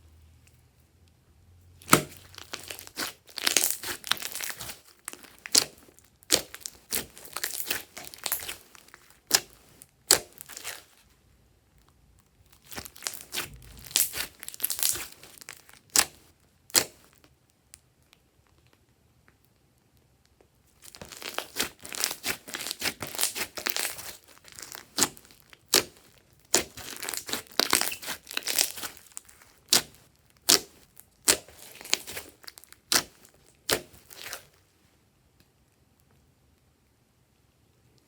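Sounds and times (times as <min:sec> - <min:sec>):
hands squishing slime: 0:01.8 - 0:11.1, 0:12.5 - 0:17.2, 0:20.8 - 0:34.6.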